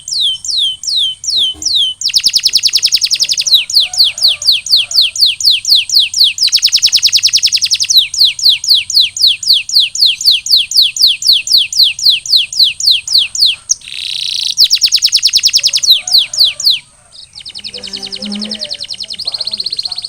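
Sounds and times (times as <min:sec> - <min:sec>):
canary singing: 0:00.0 - 0:20.0
harsh rasping bird note: 0:16.3 - 0:19.7.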